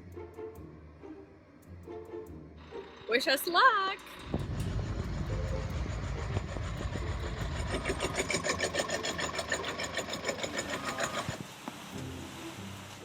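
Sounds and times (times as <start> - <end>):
heavy truck engine running: 2.4 - 13.0
rapid mechanical clatter: 2.6 - 11.6.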